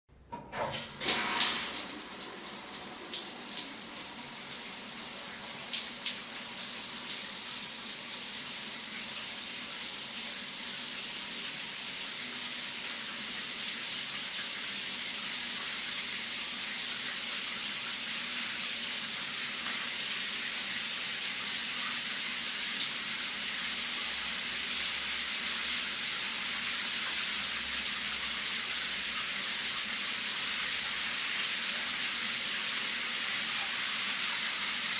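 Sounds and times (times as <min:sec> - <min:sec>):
shower spray hissing: 0:01.0 - 0:03.8.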